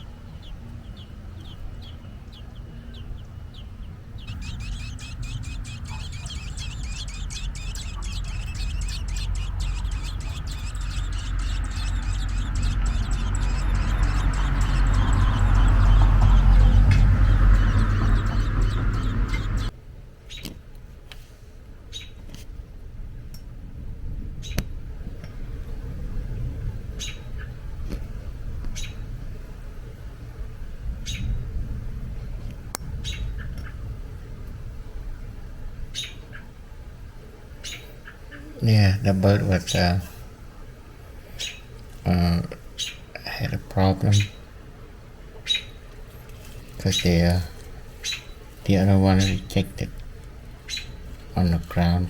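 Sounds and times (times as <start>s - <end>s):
robin chirping: 0.0s - 19.7s, 35.9s - 36.5s, 37.6s - 38.6s, 41.4s - 41.7s, 42.8s - 43.1s, 44.0s - 44.5s, 45.4s - 45.8s, 48.0s - 49.6s, 50.6s - 52.0s
steady low rumble: 0.0s - 20.0s, 22.5s - 37.6s.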